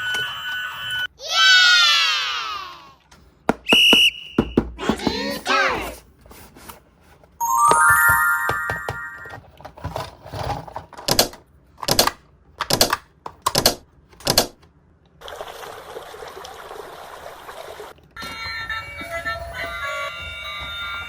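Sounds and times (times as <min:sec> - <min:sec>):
plastic parts clattering: 0:09.4 - 0:11.2.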